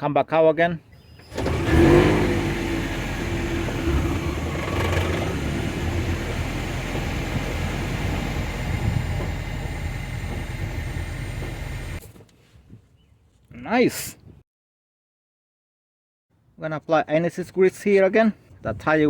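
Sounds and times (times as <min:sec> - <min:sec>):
car engine idling: 0:01.3 - 0:12.0.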